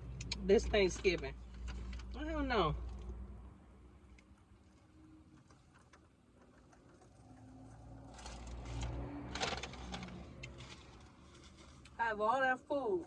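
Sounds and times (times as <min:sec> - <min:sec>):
vehicle passing by: 0:07.1 - 0:11.3.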